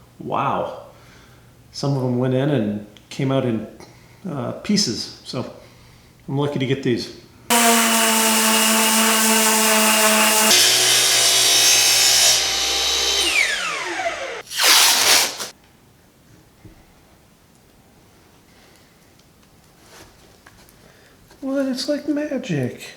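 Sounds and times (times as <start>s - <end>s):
disc sander whining: 7.5s - 14.5s.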